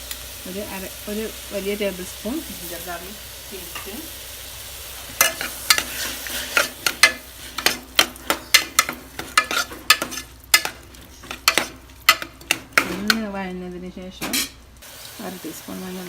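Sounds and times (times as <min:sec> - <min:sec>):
food sizzling in oil: 0:00.0 - 0:16.0
spoon scraping in a pan: 0:04.8 - 0:13.3, 0:14.2 - 0:14.6.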